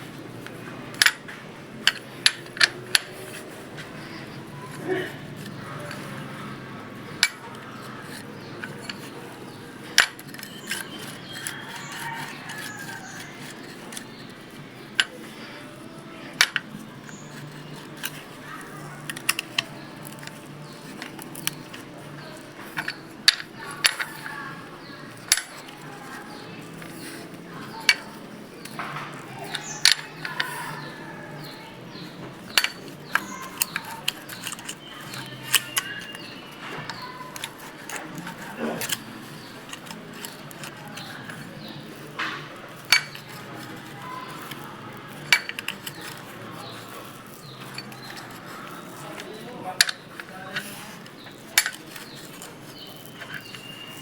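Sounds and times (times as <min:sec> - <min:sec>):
metal hand tools clinking: 0:16.4 - 0:54.0.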